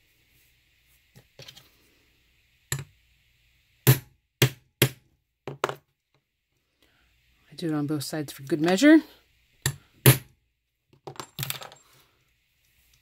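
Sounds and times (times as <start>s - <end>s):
hammer striking rivet setter: 3.8s - 5.7s.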